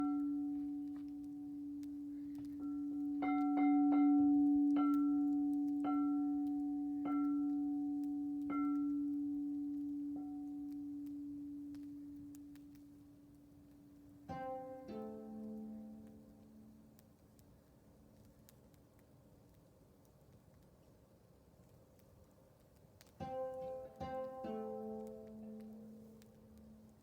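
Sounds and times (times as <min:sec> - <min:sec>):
low humming tone: 0:00.0 - 0:13.0.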